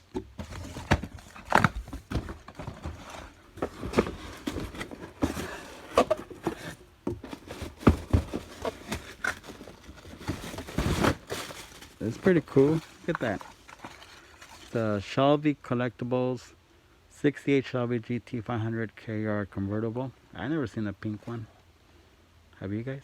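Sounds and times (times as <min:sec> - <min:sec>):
cardboard packaging being handled: 0:00.1 - 0:14.8.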